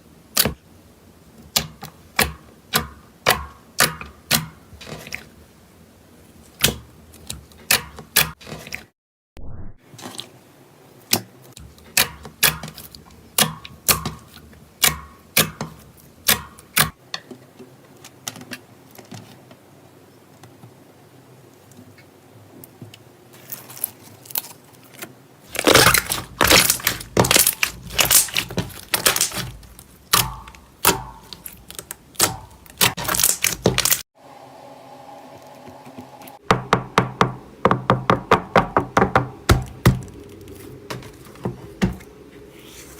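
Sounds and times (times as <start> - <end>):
slime popping and crackling: 25.5 - 34.0.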